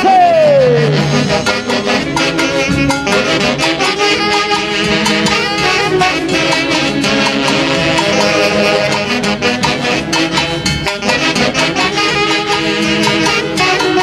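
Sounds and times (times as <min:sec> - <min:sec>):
man shouting: 0:00.0 - 0:01.0
live band with brass and percussion: 0:00.0 - 0:14.0.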